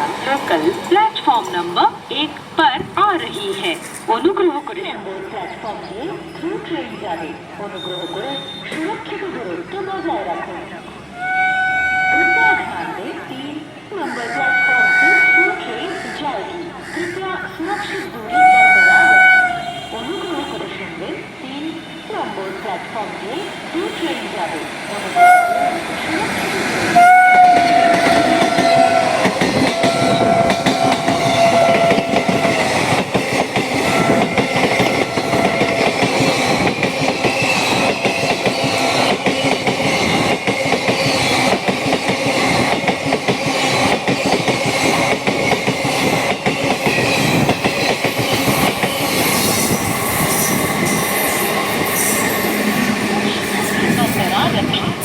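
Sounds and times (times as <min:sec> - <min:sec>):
train horn blasts: 0:11.2 - 0:13.0, 0:14.1 - 0:16.1, 0:18.3 - 0:20.8, 0:25.1 - 0:25.9, 0:26.9 - 0:32.9, 0:33.8 - 0:36.1
train wheels clickety-clack: 0:25.0 - 0:55.0.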